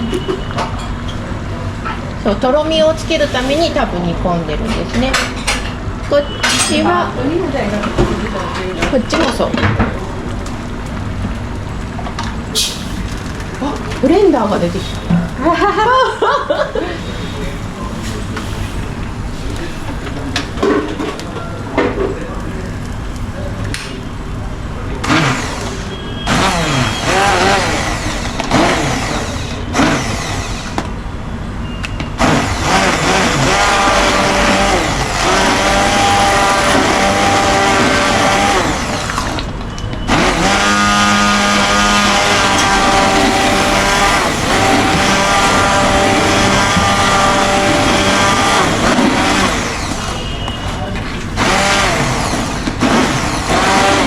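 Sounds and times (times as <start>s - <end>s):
electric blender running: 25.0s - 30.9s, 32.2s - 39.5s, 40.1s - 50.3s, 51.4s - 54.0s.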